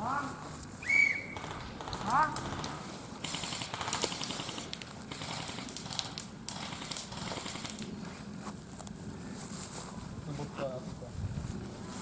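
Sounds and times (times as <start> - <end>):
rustling of movement: 0.2 - 12.0
airsoft gun firing: 1.3 - 7.8
sharp clicks: 1.3 - 7.9.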